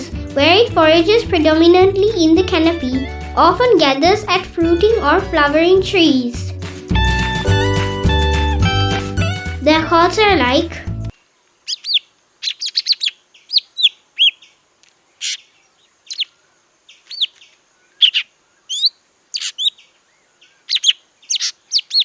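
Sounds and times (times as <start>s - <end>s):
bird chirps and whistles: 11.7s - 14.5s, 17.0s - 17.4s, 18.0s - 19.8s, 20.7s - 22.0s.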